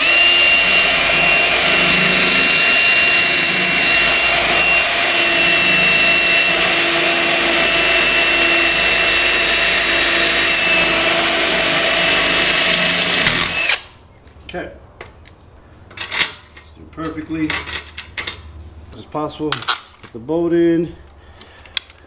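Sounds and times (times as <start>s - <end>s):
power drill whining: 0.0s - 14.0s.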